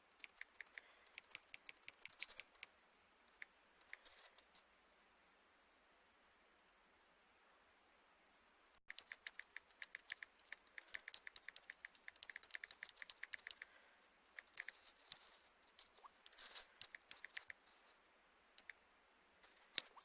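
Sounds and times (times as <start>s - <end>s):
faint rapid clicking: 0.0s - 4.6s, 8.8s - 17.9s, 18.5s - 18.8s, 19.4s - 20.0s.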